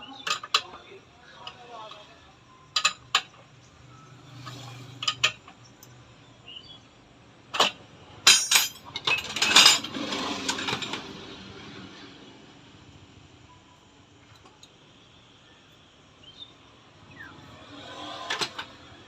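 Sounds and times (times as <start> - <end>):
metal tools clinking and knocking: 0.1 - 0.8, 2.7 - 3.5, 4.5 - 5.9, 7.5 - 11.1
metal scraping clatter: 7.6 - 11.2, 17.8 - 18.9.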